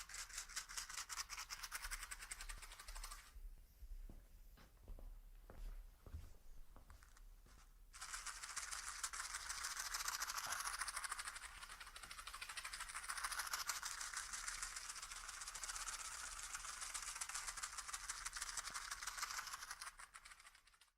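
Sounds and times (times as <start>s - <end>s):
fast shaker-like rattle: 0.0s - 3.4s, 7.9s - 20.9s.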